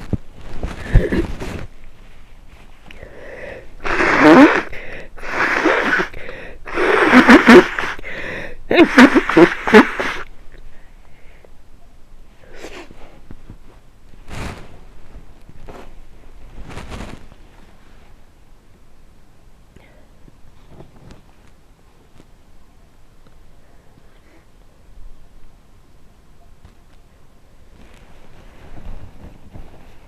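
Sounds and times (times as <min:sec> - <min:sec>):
person sneezing: 0:03.5 - 0:10.3.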